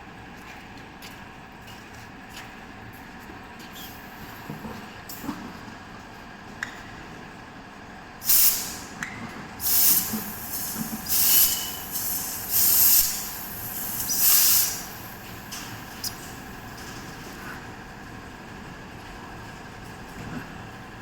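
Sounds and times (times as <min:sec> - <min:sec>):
high-pitched hissing bursts: 0:09.6 - 0:15.2.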